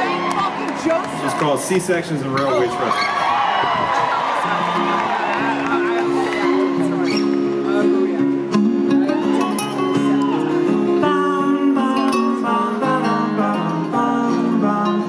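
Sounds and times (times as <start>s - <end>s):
live band playing: 0.0s - 15.0s
strummed acoustic guitar: 4.4s - 15.0s.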